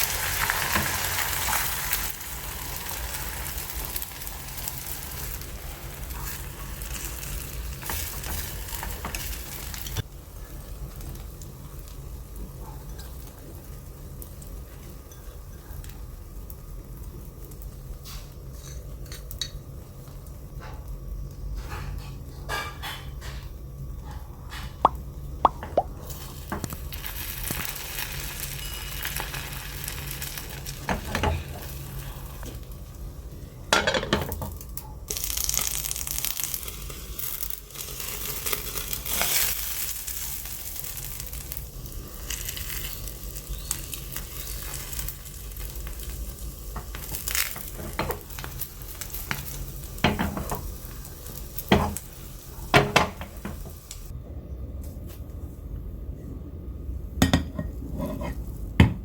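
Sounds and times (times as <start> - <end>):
food sizzling in oil: 0.0 - 20.1, 24.9 - 33.1, 34.2 - 54.1.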